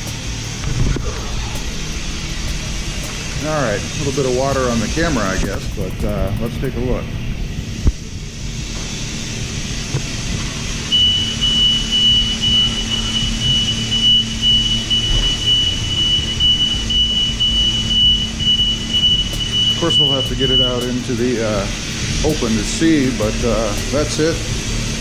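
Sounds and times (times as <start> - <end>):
car engine low rumble: 0.0 - 25.0
high-pitched beep-like tone: 11.0 - 20.9.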